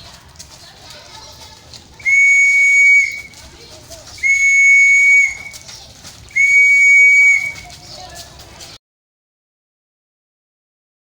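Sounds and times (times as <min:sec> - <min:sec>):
hand whistle blasts: 0:02.0 - 0:03.3, 0:04.2 - 0:05.6, 0:06.4 - 0:07.6.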